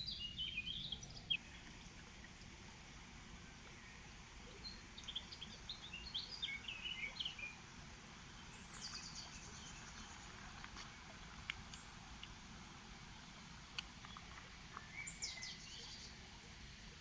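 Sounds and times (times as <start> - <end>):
songbird chirping and trilling: 0.0 - 2.1, 3.6 - 7.7, 8.3 - 10.6, 14.0 - 16.3.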